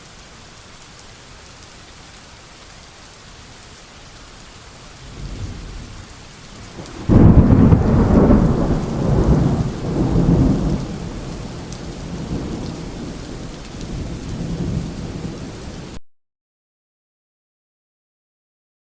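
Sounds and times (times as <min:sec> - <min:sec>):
steady rain: 0:00.0 - 0:16.0
rolling thunder: 0:05.0 - 0:16.0.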